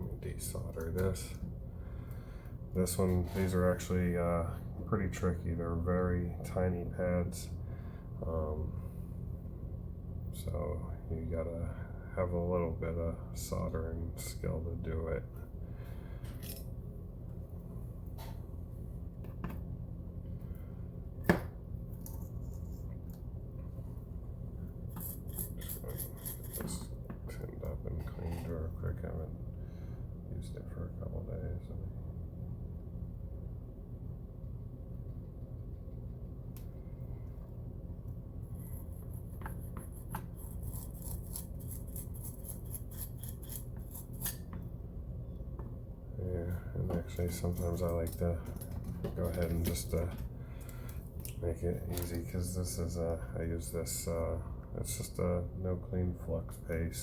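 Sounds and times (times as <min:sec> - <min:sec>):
low electrical hum: 0:00.0 - 0:57.0.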